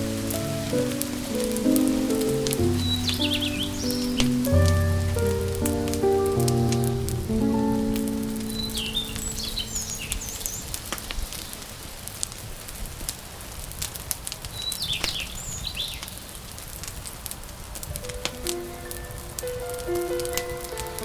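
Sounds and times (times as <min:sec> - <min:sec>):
wood fire crackling and popping: 0:00.0 - 0:08.6
birds chirping: 0:00.0 - 0:11.6.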